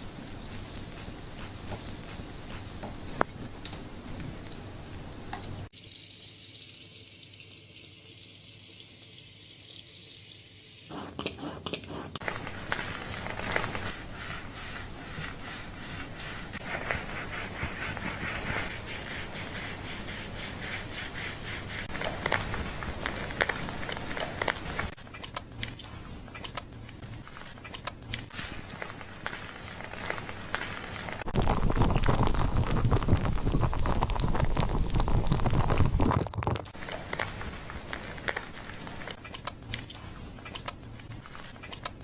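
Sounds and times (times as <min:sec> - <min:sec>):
hands scrubbing wet hair: 0:12.1 - 0:24.9, 0:28.4 - 0:36.2
water running onto hair: 0:12.3 - 0:24.9, 0:28.4 - 0:36.1.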